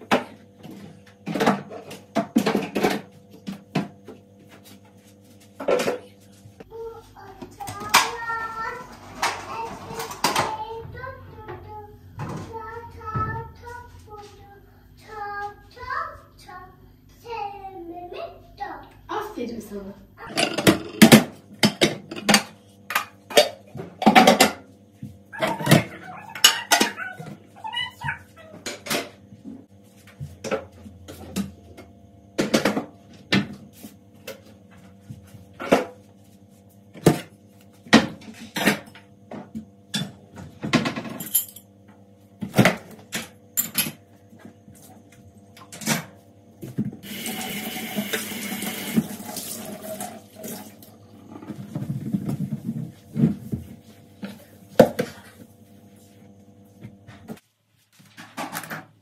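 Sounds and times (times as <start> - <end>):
dishes clinking and knocking: 20.3 - 24.6, 25.4 - 27.3
water tap running: 47.0 - 51.0.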